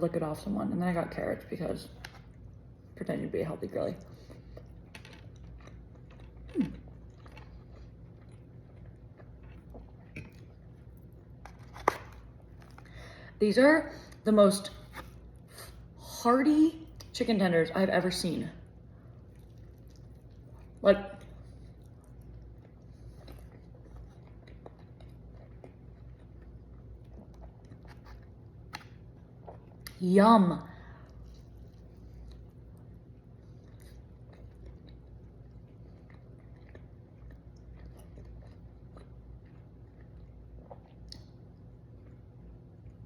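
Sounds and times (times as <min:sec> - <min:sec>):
person chewing and crunching: 0:04.0 - 0:13.0, 0:19.0 - 0:30.0, 0:31.0 - 0:43.0.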